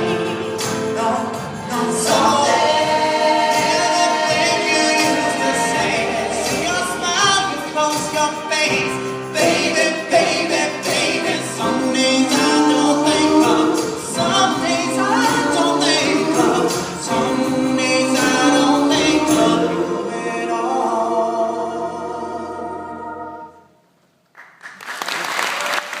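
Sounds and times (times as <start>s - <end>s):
choir singing in harmony: 0.0s - 23.8s
applause: 24.3s - 26.0s.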